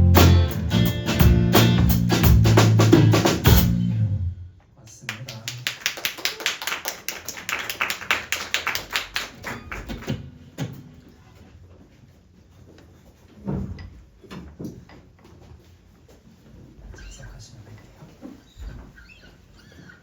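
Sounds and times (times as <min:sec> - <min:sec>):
small audience applauding: 0:04.9 - 0:10.3.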